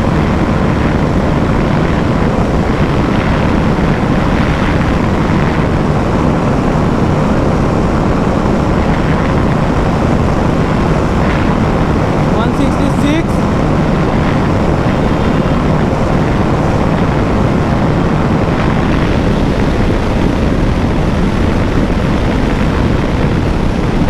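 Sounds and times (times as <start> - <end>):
wind rush over microphone: 0.0 - 24.0
single-cylinder engine at high revs: 14.8 - 15.8.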